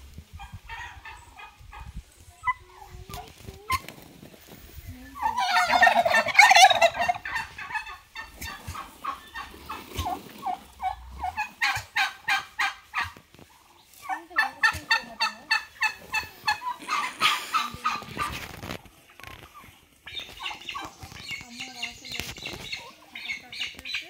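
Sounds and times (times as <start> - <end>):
turkeys gobbling: 0.4 - 4.3, 5.1 - 24.0.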